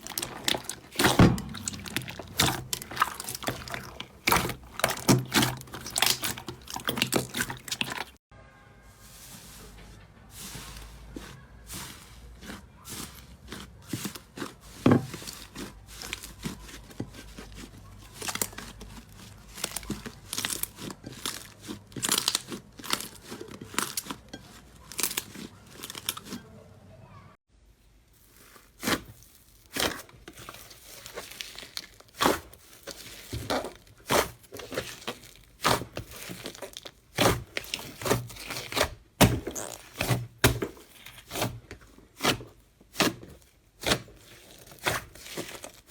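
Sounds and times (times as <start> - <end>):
slime crackling and popping: 0.0 - 8.2, 12.4 - 26.4, 28.2 - 41.6, 42.2 - 45.9.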